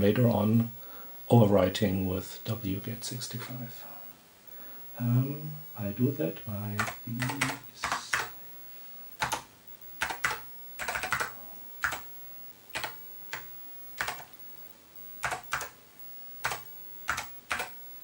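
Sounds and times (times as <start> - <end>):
keyboard keystrokes: 6.8 - 8.3, 9.2 - 9.4, 10.0 - 12.1, 12.7 - 14.3, 15.2 - 15.8, 16.4 - 17.8.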